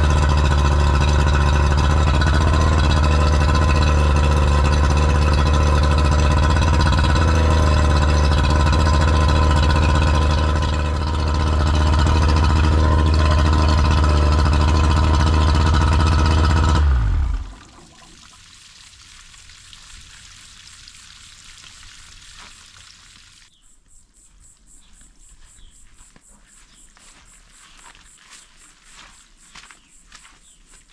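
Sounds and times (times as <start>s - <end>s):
outboard motor running: 0.0s - 23.5s.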